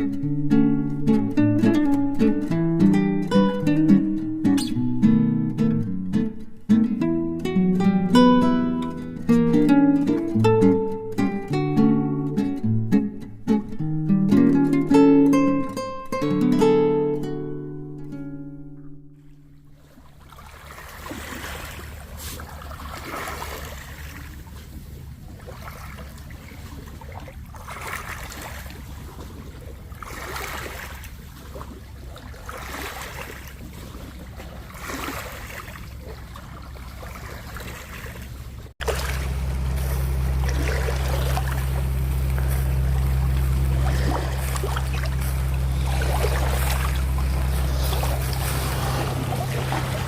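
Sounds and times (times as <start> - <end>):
lake water lapping: 8.2 - 12.6, 19.1 - 50.0
steady low rumble: 19.1 - 30.3, 38.2 - 50.0.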